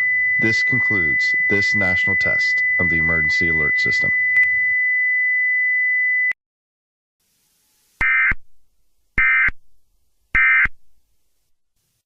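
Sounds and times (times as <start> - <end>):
warbling digital data tones: 0.0 - 4.8
steady high tone: 0.0 - 6.4.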